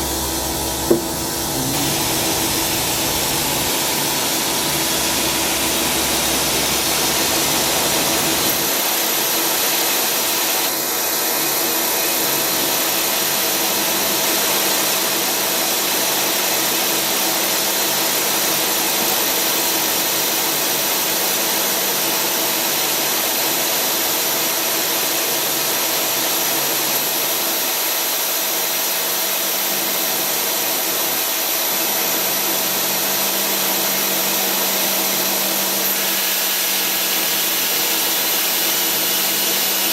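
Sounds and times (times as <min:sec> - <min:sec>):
low hum: 0:00.0 - 0:07.9
thin high whine: 0:00.0 - 0:08.8
lathe whirring: 0:00.0 - 0:14.5, 0:27.9 - 0:39.9.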